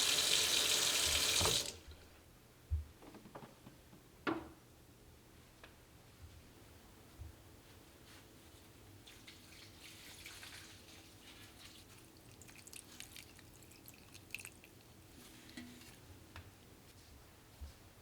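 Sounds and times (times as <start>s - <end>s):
water pouring onto plants: 9.0s - 14.9s
water dripping: 11.8s - 15.0s.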